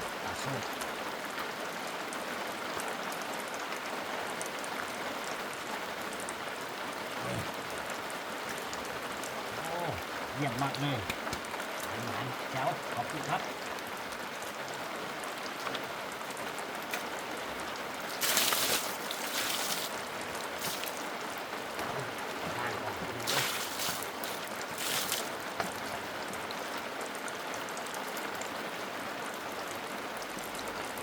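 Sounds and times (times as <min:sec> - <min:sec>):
heavy rain hissing: 0:06.5 - 0:27.1.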